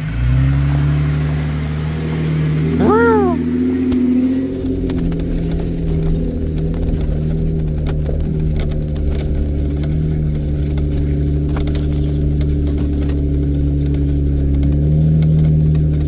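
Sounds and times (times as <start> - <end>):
vehicle engine running at low revs: 3.9 - 16.0.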